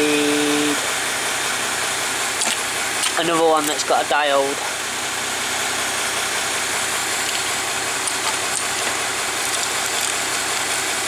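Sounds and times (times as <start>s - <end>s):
bus diesel engine idling: 0.0s - 9.4s.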